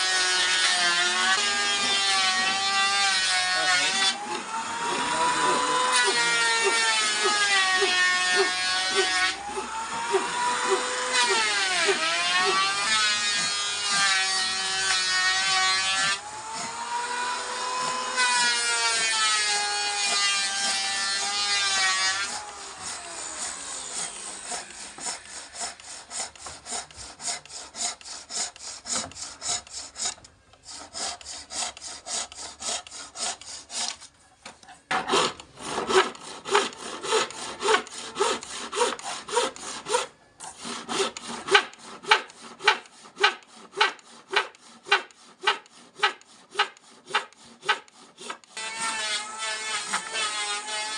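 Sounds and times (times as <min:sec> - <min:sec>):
hand tool stroking wood: 0:00.0 - 0:50.9.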